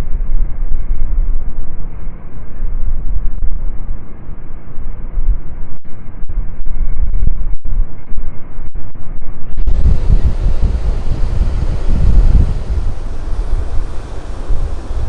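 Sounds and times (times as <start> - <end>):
wind buffeting microphone: 9.6 - 15.0.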